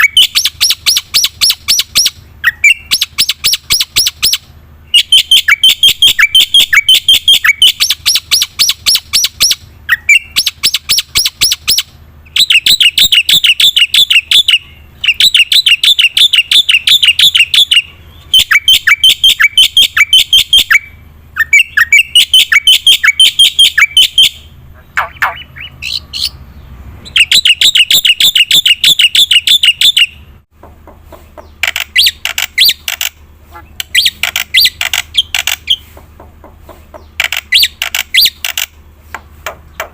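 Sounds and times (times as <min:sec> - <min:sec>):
starling singing sharp notes: 0:00.0 - 0:30.5.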